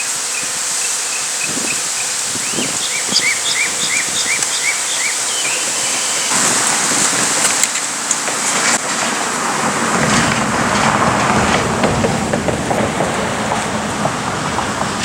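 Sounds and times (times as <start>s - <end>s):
bird singing quick chirps: 0.0s - 6.4s
steady outdoor hiss: 0.0s - 15.0s
passing vehicle: 1.8s - 15.0s.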